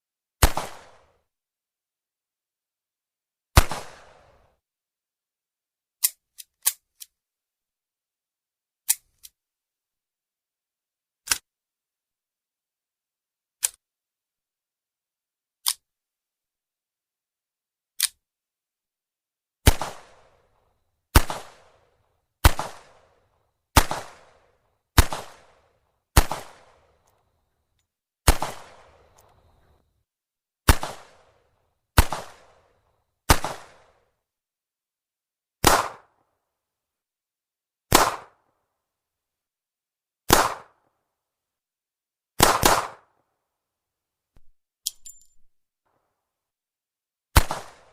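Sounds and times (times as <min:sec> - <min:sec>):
revolver gunshots: 0:00.4 - 0:01.0, 0:19.6 - 0:20.3, 0:21.2 - 0:21.8, 0:22.4 - 0:23.0, 0:23.8 - 0:24.4, 0:25.0 - 0:25.6, 0:26.2 - 0:26.8, 0:28.3 - 0:29.1, 0:30.7 - 0:31.3, 0:32.0 - 0:32.6, 0:33.3 - 0:34.0, 0:47.4 - 0:47.9.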